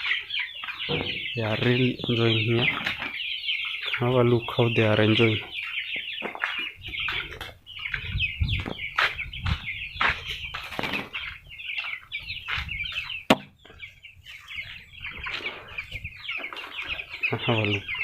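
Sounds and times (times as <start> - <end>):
chicks peeping and cheeping: 0.0 - 18.0.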